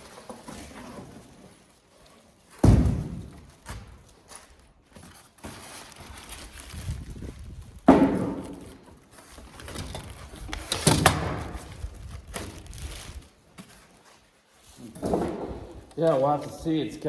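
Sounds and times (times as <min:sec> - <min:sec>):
thuds from handling a box: 0:02.6 - 0:03.8, 0:07.9 - 0:08.7
packaging rustling: 0:03.5 - 0:14.9.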